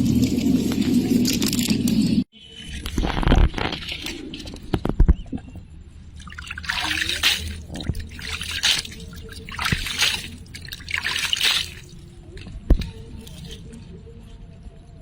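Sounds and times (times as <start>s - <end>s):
water splashing and dripping: 2.7s - 5.5s, 6.1s - 13.9s.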